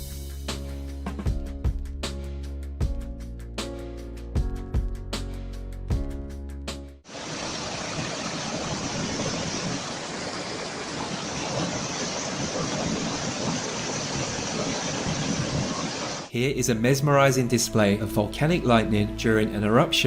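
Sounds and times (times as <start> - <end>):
steady rushing noise: 7.1 - 16.3
plucked background music: 16.4 - 20.0.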